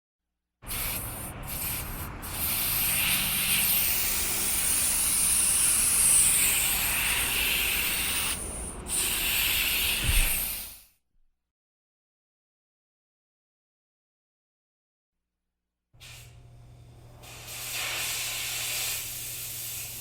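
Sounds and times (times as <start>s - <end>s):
spray paint can hissing: 0.7s - 10.8s, 17.2s - 20.0s.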